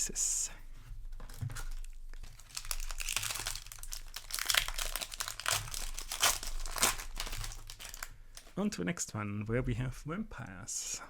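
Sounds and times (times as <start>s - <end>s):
foil wrapper crinkling: 1.2s - 8.6s.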